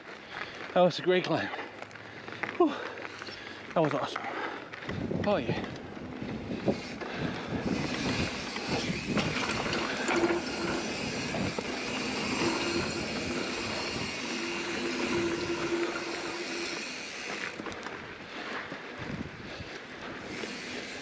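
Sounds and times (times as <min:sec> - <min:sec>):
bike tyre rumble on dirt: 0:00.0 - 0:21.0
wind on microphone: 0:04.9 - 0:16.1
bicycle freehub ratcheting buzz: 0:06.5 - 0:17.9, 0:20.2 - 0:21.0.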